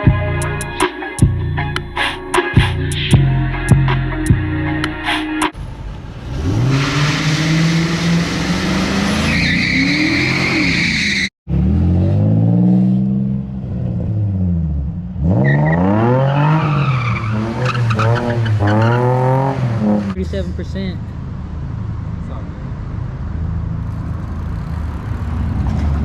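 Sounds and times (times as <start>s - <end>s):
motor engine revving: 6.0s - 10.7s.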